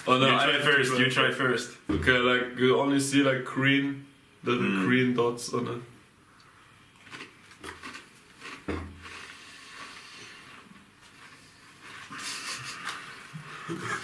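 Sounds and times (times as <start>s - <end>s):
crisps crunching: 6.9s - 12.2s.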